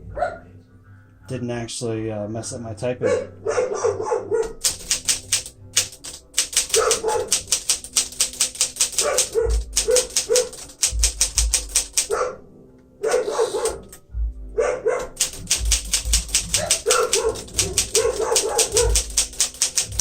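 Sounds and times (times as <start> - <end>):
typewriter key clicks: 4.6 - 12.2, 13.1 - 14.0, 15.0 - 20.0.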